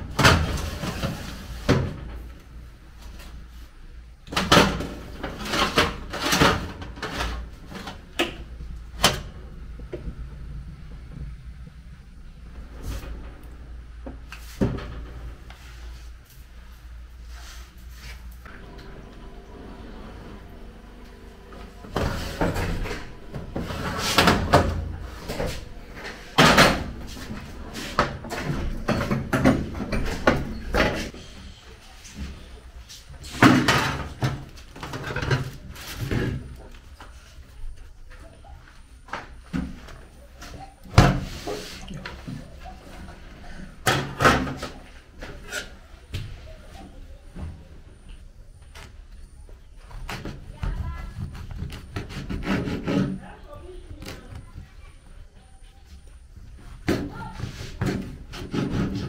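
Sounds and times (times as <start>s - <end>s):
kitchen items knocking and clattering: 4.3s - 8.4s, 21.8s - 31.1s, 33.2s - 36.5s
kitchen knocks and bangs: 28.0s - 31.1s.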